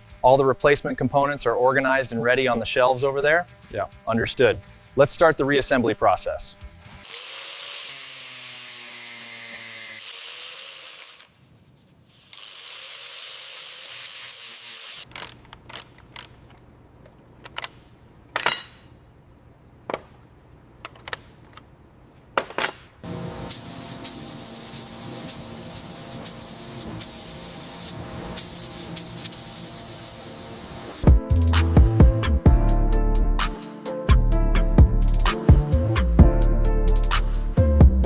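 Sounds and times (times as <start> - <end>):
power tool humming: 3.2 - 11.4, 12.1 - 16.3
tool clicks and knocks: 15.1 - 18.9, 19.9 - 20.2, 20.8 - 21.7
short spray hiss: 23.5 - 30.3.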